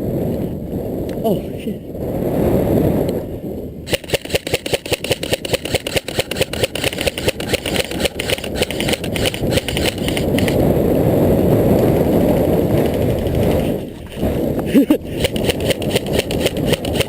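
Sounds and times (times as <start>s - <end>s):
steady rushing noise: 0.0s - 17.0s
airsoft rifle rapid fire: 3.9s - 10.6s, 15.2s - 17.0s.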